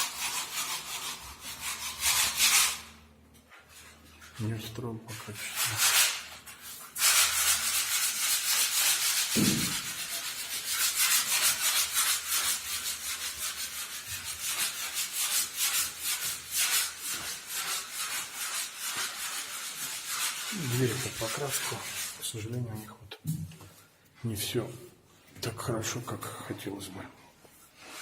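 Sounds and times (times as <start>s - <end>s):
sanding float scratching plaster: 0.0s - 2.9s, 5.2s - 22.4s, 27.7s - 28.0s
low thud: 9.4s - 9.9s.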